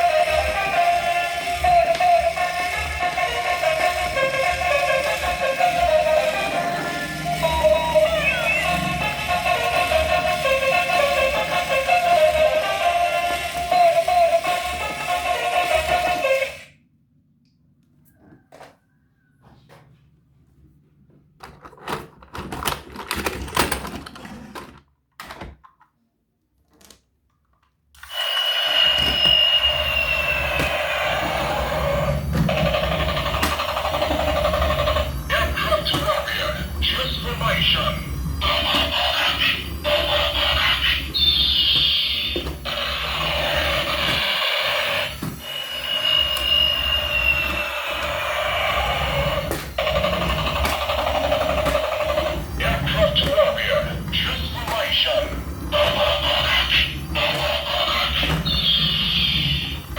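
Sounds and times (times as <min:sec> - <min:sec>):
loud noise with whistle tone: 0:00.0 - 0:14.4, 0:28.1 - 0:59.9
plastic toys clicking and rattling: 0:21.4 - 0:25.9, 0:48.8 - 0:59.9
high squeal: 0:28.0 - 0:59.9.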